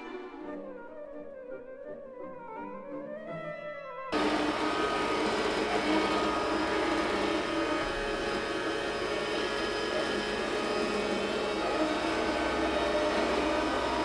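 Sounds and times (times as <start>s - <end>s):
robot vacuum cleaner whirring: 4.2s - 14.0s.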